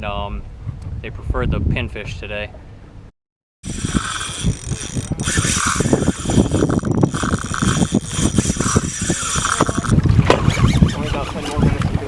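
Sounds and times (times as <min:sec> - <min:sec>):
fishing reel ratcheting clicks: 0:03.6 - 0:11.3.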